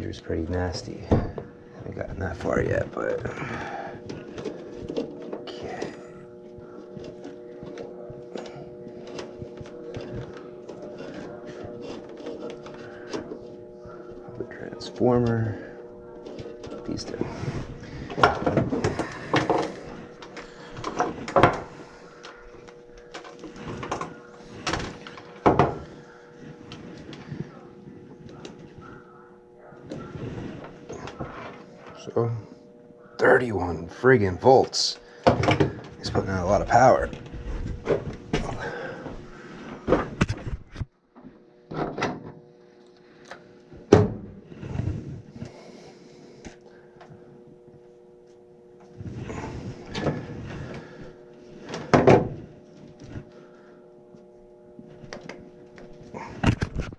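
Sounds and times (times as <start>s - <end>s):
faint steady hum: 0.0s - 56.9s
hard objects knocking and clattering: 18.1s - 21.7s, 23.1s - 25.9s.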